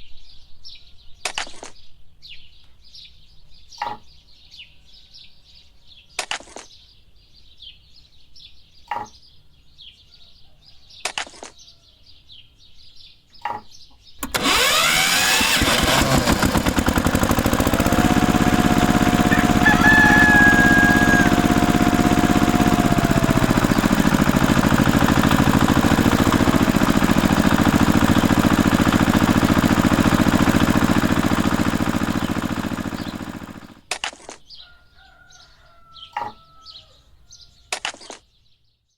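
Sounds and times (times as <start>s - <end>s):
small motor buzzing: 14.2s - 33.8s.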